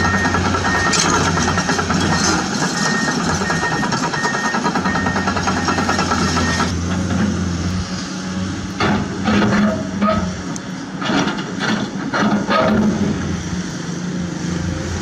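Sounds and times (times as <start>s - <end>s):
reversing beeper beeps: 0.0s - 1.2s, 2.0s - 6.8s
truck engine running: 0.0s - 15.0s.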